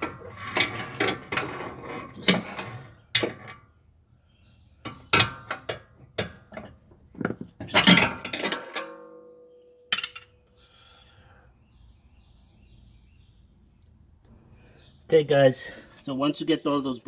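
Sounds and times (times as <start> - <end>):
metal clanks and knocks: 0.0 - 3.7, 4.8 - 10.4.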